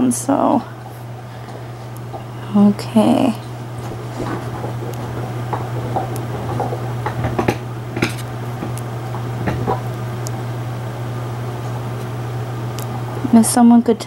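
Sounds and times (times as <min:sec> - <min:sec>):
steady low hum: 0:00.0 - 0:14.0
dog chewing bone: 0:03.4 - 0:10.4.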